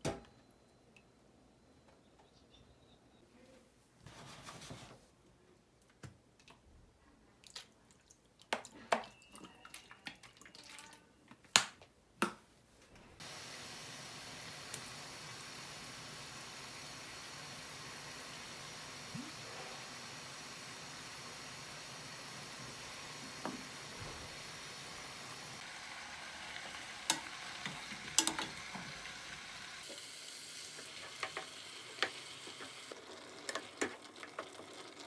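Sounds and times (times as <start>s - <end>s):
steady hiss: 13.2s - 32.8s
utensils clicking and knocking: 27.0s - 29.0s.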